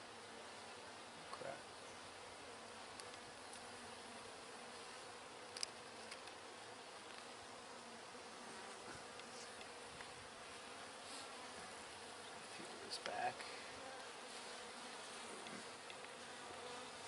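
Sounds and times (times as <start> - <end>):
honeybees buzzing: 0.0 - 17.0
small handling clicks: 5.5 - 6.4.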